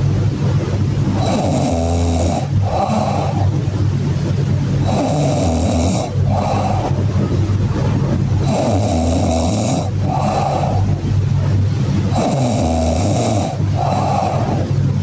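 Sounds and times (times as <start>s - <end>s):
person snoring loudly: 1.1s - 3.6s, 4.8s - 7.1s, 8.4s - 11.0s, 12.1s - 14.8s.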